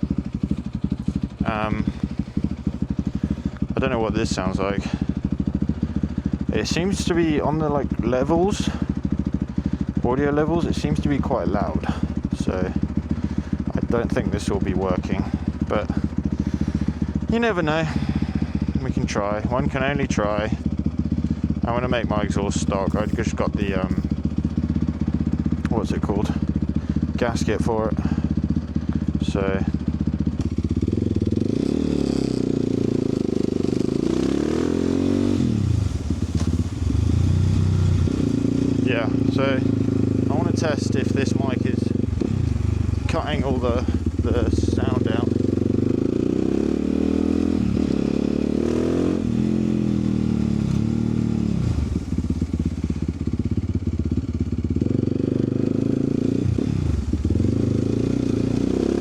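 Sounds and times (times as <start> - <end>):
car engine running: 0.0 - 5.4, 9.6 - 24.6, 31.9 - 46.2, 50.0 - 54.9
vehicle engine revving: 30.4 - 53.9, 54.5 - 59.0.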